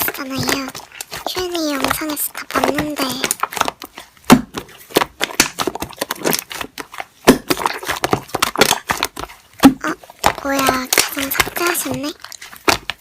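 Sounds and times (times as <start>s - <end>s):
slime squished by hand: 0.0s - 13.0s.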